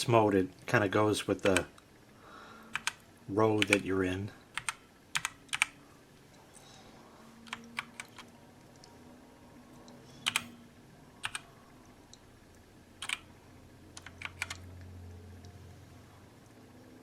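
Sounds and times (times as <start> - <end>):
mechanical keyboard keys clacking: 1.4 - 1.7, 2.7 - 3.0, 3.6 - 3.8, 4.6 - 5.8, 7.5 - 8.3, 10.2 - 10.5, 11.2 - 11.4, 13.0 - 13.2, 14.0 - 14.6.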